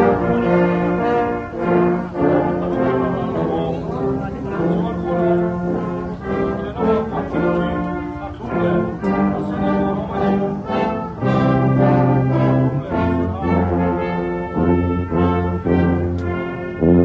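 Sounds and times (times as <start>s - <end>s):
brass band playing chords: 0.0s - 17.0s.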